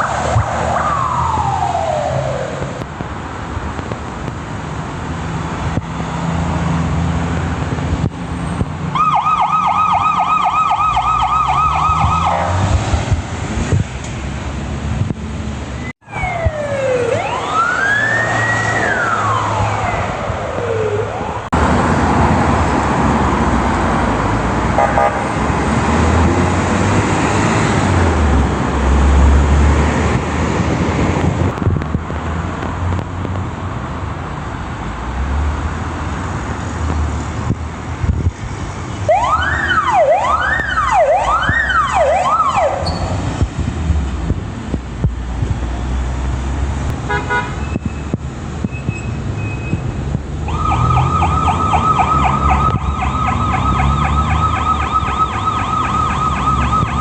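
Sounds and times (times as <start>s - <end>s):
ambulance siren wailing: 0.0s - 2.8s, 8.9s - 12.8s, 16.0s - 21.6s, 24.7s - 25.4s, 39.0s - 42.9s, 50.4s - 57.0s
vehicle engine and road noise: 0.0s - 57.0s.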